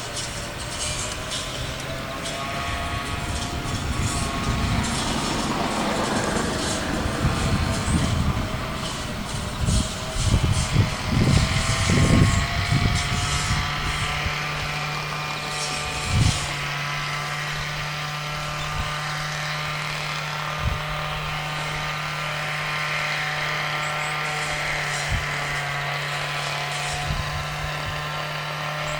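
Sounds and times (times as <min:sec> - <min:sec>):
steady mechanical hum: 0:00.0 - 0:28.9.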